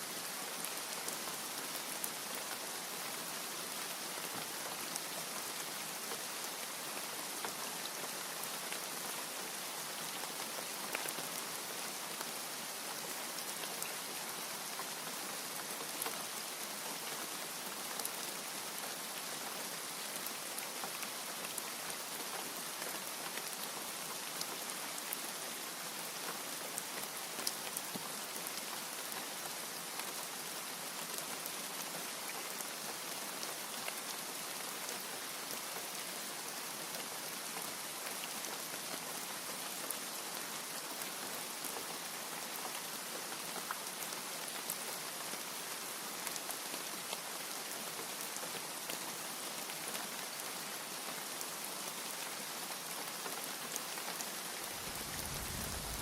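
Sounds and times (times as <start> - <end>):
heavy rain falling: 54.3 - 56.0.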